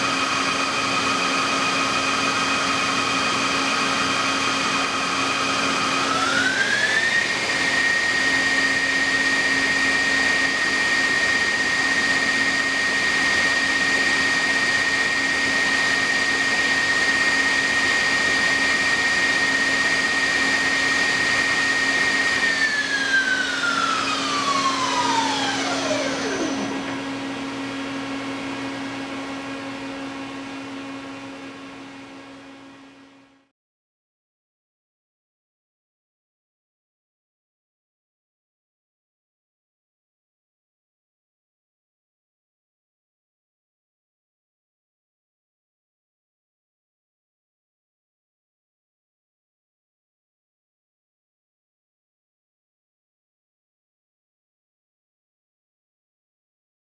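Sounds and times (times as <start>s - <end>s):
lathe spindle whine: 0.0s - 33.0s.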